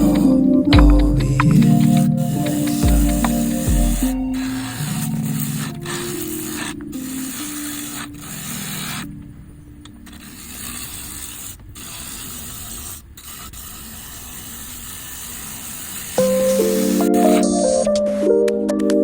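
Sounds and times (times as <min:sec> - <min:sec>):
wood lathe rasping hiss: 0:00.0 - 0:00.4, 0:01.6 - 0:09.1, 0:10.1 - 0:17.6
loud music: 0:00.0 - 0:04.6.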